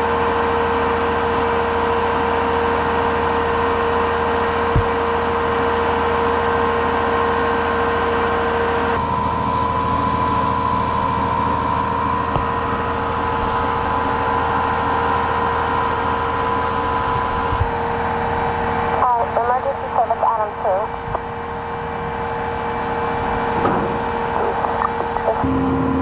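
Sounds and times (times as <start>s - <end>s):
engine idling: 0.0s - 26.0s.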